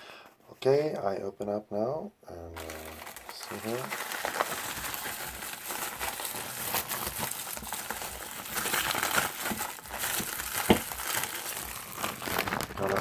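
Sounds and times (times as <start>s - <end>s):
plastic packaging crinkling: 2.6s - 13.0s.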